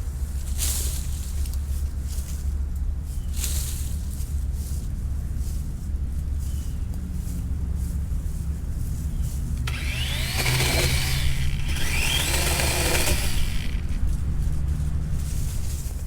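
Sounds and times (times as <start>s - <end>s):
chainsaw cutting wood: 9.7s - 14.4s
chainsaw motor hum: 9.7s - 15.3s.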